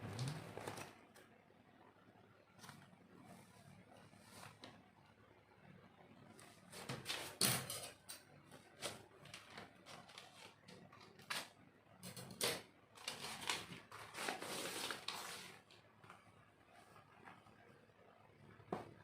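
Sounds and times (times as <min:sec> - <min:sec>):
packaging rustling and crinkling: 0:08.8 - 0:11.5, 0:13.0 - 0:15.8.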